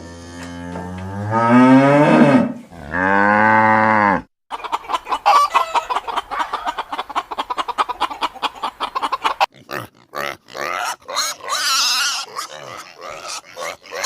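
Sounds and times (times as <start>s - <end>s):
chickens clucking: 4.5s - 9.8s.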